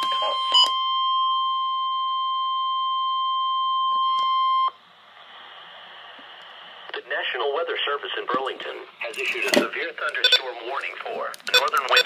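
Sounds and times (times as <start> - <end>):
piercing alarm beep: 0.0 - 4.8, 10.2 - 10.4, 11.5 - 12.0
faint radio hiss: 4.7 - 12.0.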